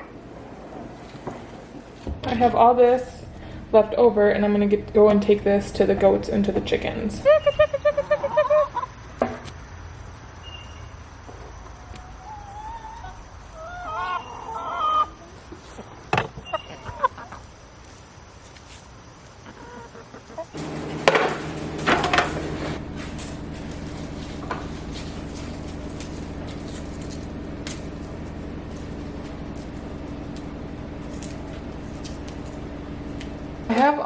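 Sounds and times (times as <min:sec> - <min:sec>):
steady low hum: 0:00.0 - 0:13.7, 0:20.5 - 0:34.0
chickens clucking: 0:05.2 - 0:09.5, 0:10.9 - 0:33.8.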